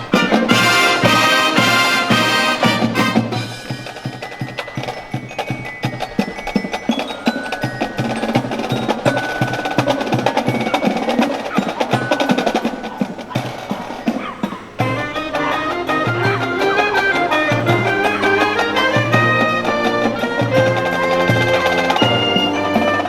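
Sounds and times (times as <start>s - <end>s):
glockenspiel notes ringing: 0.0s - 13.9s, 14.8s - 23.0s
marching drums beating: 0.0s - 23.0s.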